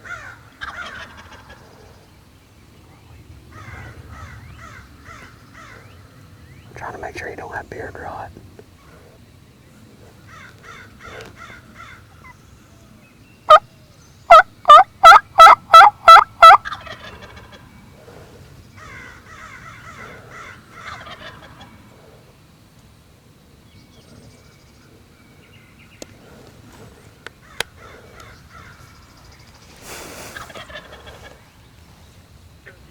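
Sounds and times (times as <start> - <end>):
wild turkey yelping: 0.0 - 1.6, 14.3 - 17.6
faint bird calls: 23.9 - 32.9.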